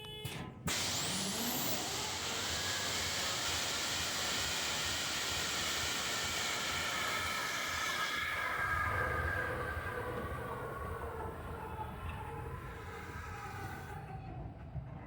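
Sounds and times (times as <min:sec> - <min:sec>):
locomotive air starter rushing: 0:00.7 - 0:10.9
rising whine: 0:00.7 - 0:14.6.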